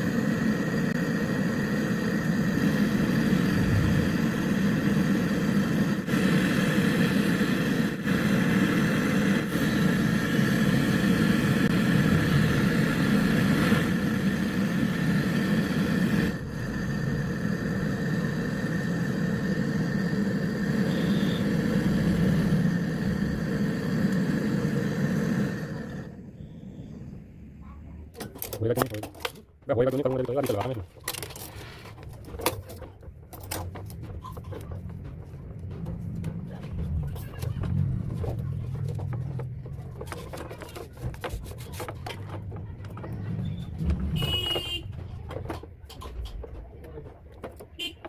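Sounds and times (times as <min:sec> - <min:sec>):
electric motor humming: 0:00.0 - 0:26.4.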